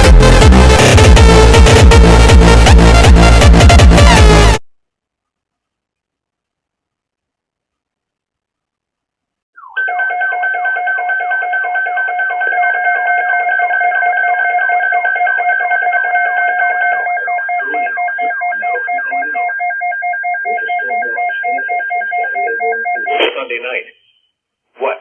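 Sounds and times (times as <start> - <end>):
synthesized electronic music: 0.0 - 4.6.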